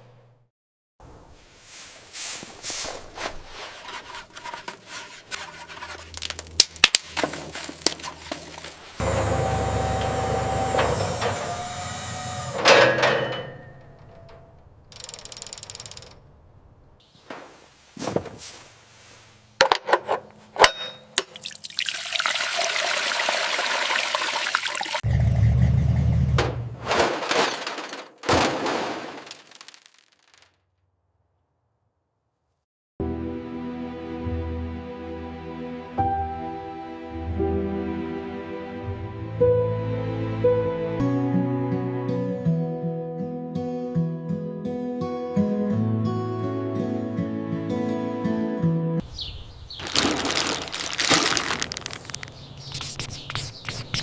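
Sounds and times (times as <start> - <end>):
sharp clicks and knocks: 13.8 - 16.2.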